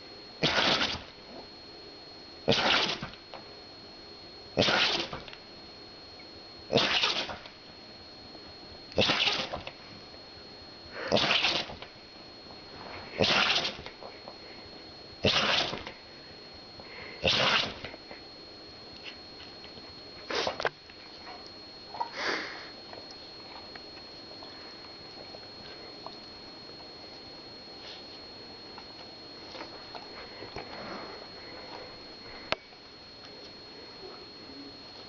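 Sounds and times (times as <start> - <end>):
dog sneezing: 0.4 - 1.0, 2.5 - 3.1, 4.6 - 5.1, 6.8 - 7.4, 9.0 - 9.6, 11.1 - 11.7, 13.2 - 13.8, 15.3 - 15.8, 17.2 - 17.8.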